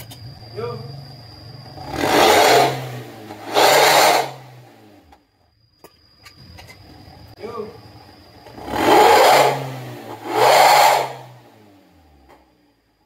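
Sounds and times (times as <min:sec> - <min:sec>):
growling exhaust bursts: 0:01.9 - 0:04.6.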